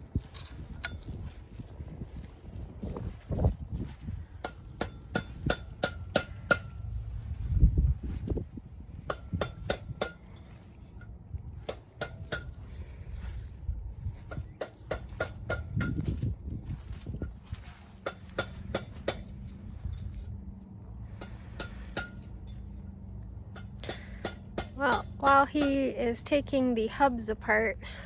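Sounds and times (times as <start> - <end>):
hammer tapping on metal: 4.2 - 6.8, 8.8 - 10.6, 11.6 - 12.7, 14.2 - 16.2, 18.0 - 19.3, 21.2 - 22.7, 23.5 - 25.8.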